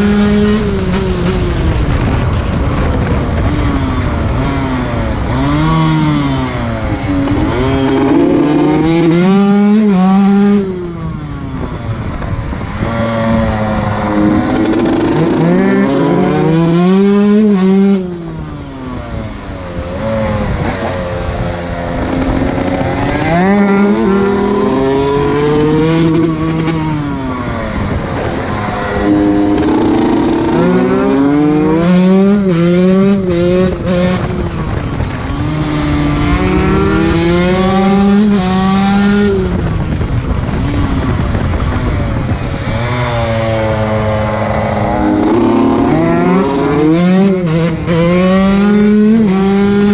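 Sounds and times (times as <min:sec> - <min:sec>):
dirt bike engine revving: 0:03.6 - 0:10.9, 0:12.8 - 0:18.3, 0:20.0 - 0:39.6, 0:42.7 - 0:49.9.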